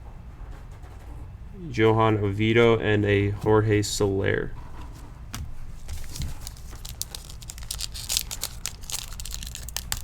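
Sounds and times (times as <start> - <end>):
trading cards flicking and rustling: 5.0 - 10.0
paper and foil crinkling: 5.7 - 10.0.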